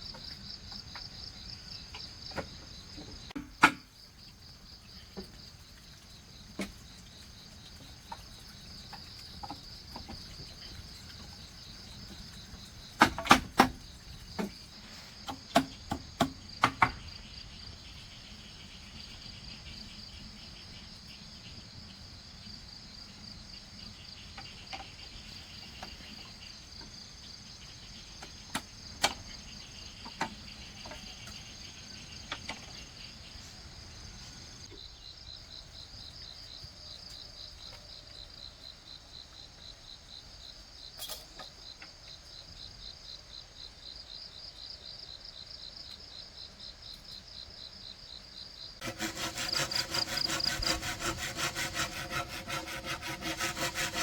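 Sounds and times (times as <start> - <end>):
insects chirping drone: 0.0 - 54.0
sharp knocks: 15.3 - 17.0.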